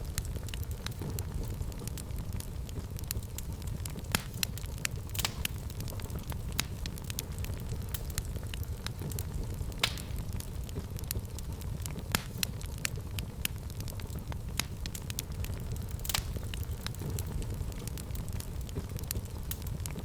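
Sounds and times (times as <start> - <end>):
fire crackling: 0.0 - 20.0
low rumble of flames: 0.0 - 20.0
sharp pops of fire: 0.0 - 20.0.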